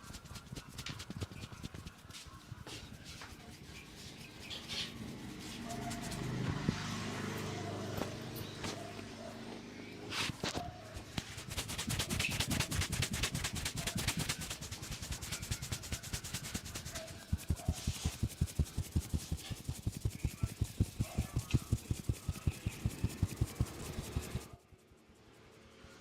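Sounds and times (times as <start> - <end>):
hands slapping in massage: 10.2 - 24.4.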